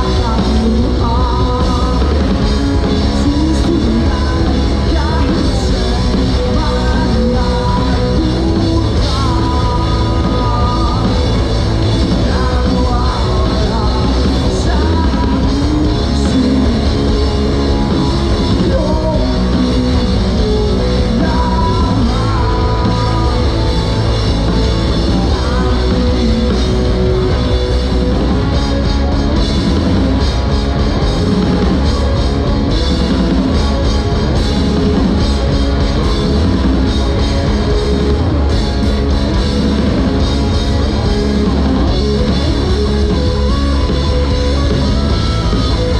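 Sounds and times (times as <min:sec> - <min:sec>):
person singing: 0:00.0 - 0:27.6
rock band playing live: 0:00.0 - 0:45.9.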